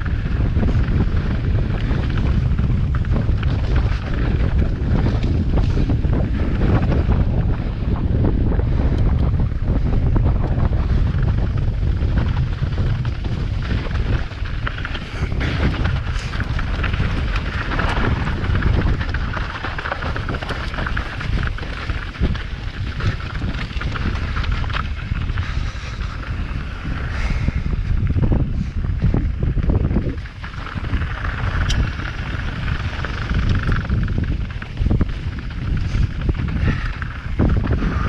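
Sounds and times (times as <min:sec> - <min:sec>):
tyres on loose ground: 0:00.0 - 0:38.0
wind buffeting microphone: 0:00.0 - 0:38.0.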